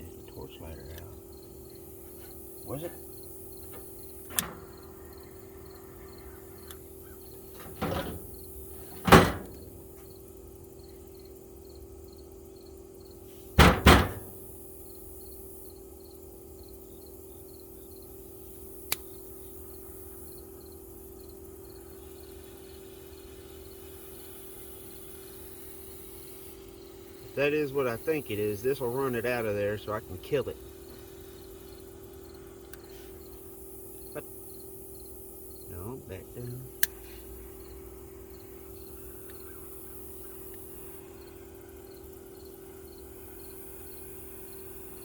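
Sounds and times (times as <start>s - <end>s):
steady hum: 0.0s - 11.2s
sharp click: 3.7s - 4.7s, 18.9s - 19.1s
toolbox knocks and thumps: 7.6s - 9.9s, 13.6s - 14.4s.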